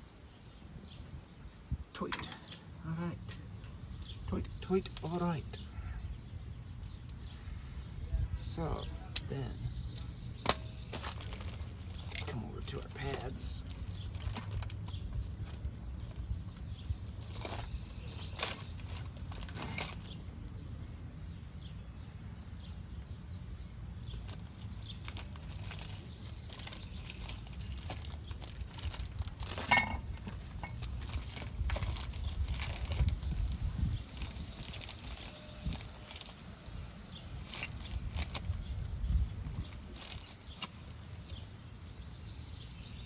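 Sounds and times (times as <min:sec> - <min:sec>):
brake parts clicking and rustling: 0:09.6 - 0:20.3, 0:24.0 - 0:42.2.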